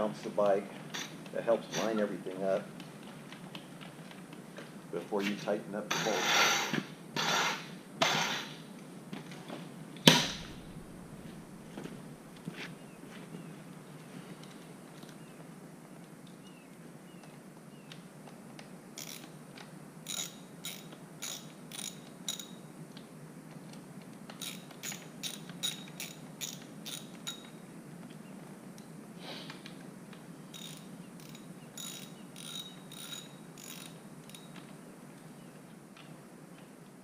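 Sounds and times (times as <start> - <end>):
brief scrape: 5.9 - 8.6
ratchet wrench clicking: 19.0 - 19.3, 20.0 - 22.6, 24.4 - 27.5, 30.5 - 34.5.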